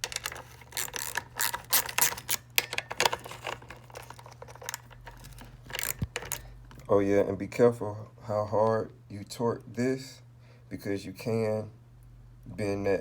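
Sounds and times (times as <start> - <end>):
wrench clicking on metal: 0.0 - 6.4
steady low hum: 0.0 - 13.0.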